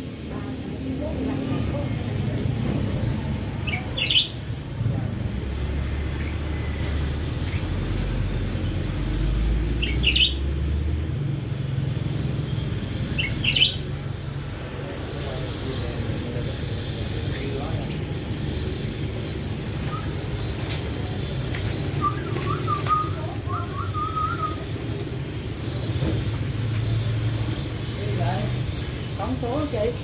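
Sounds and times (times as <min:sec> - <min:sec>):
bird chirping: 0:03.6 - 0:04.4, 0:09.7 - 0:10.6, 0:12.5 - 0:14.0.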